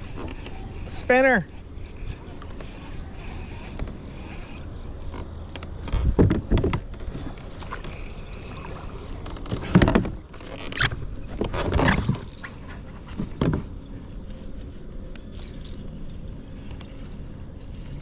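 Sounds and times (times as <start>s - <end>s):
knocks and bumps on kayak: 5.9s - 7.5s.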